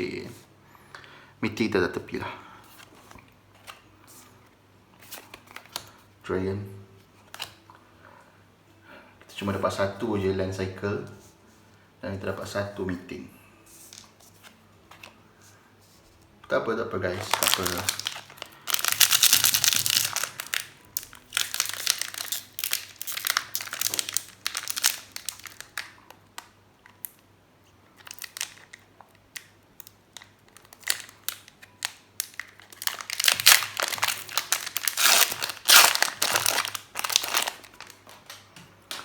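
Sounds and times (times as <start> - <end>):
foil wrapper crinkling and tearing: 17.1 - 27.1, 28.0 - 39.0.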